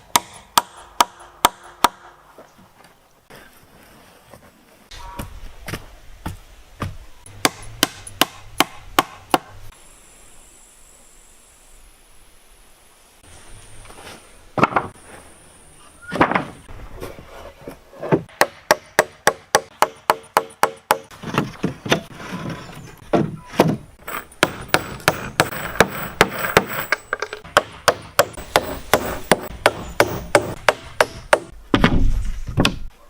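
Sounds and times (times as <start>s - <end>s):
hand tool striking wood: 5.7s - 9.6s, 18.1s - 22.1s, 23.1s - 32.9s.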